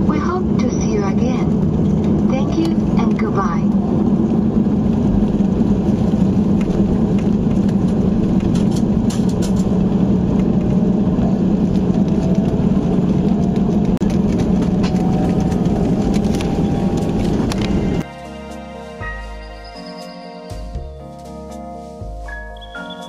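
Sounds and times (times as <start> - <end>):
aircraft engine rumble: 0.0 - 18.1.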